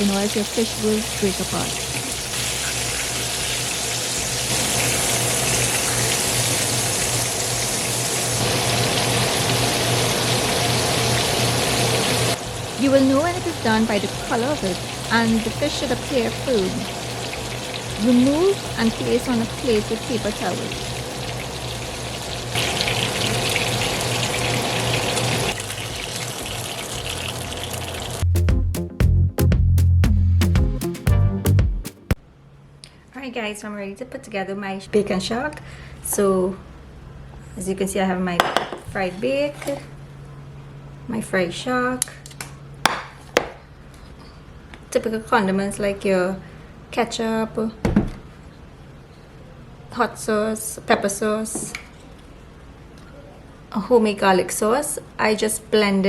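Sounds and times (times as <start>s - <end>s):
fish sizzling in hot oil: 0.0s - 28.2s
rhythmic music: 28.2s - 32.2s.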